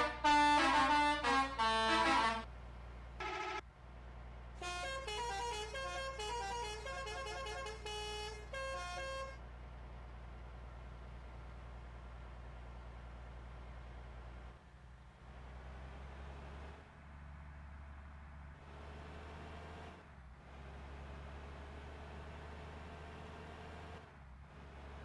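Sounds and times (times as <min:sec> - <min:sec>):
multi-tone bus horn tunes: 0:00.0 - 0:02.5, 0:03.2 - 0:03.6, 0:04.6 - 0:09.4.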